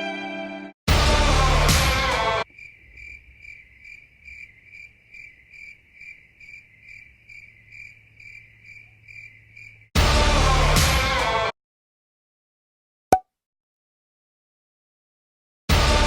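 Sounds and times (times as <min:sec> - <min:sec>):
crickets chirping: 0:02.4 - 0:10.0.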